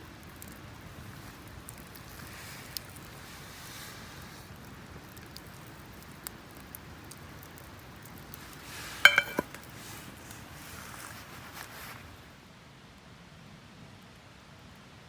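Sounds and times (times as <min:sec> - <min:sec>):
metallic clinks with a ring: 0:09.1 - 0:09.5.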